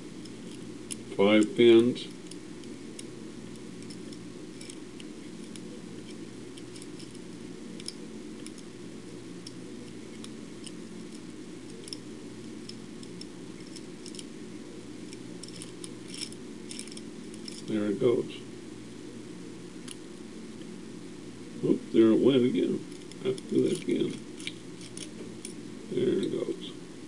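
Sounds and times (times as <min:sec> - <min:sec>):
steady low hum: 0:00.0 - 0:27.0
lock pick metallic ticks and scrapes: 0:00.2 - 0:07.2, 0:07.8 - 0:08.7, 0:09.4 - 0:14.3, 0:15.1 - 0:17.7, 0:22.8 - 0:25.6.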